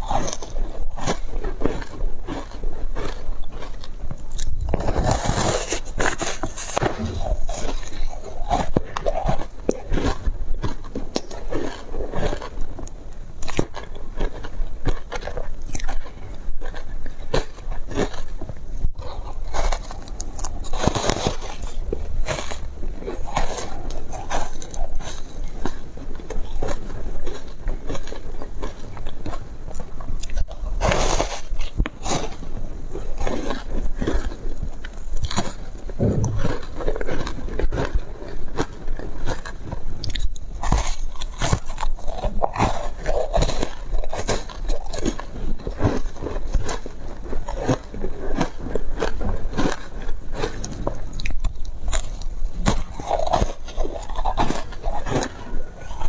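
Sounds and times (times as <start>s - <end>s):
chewing crunchy ice: 0.0s - 56.0s.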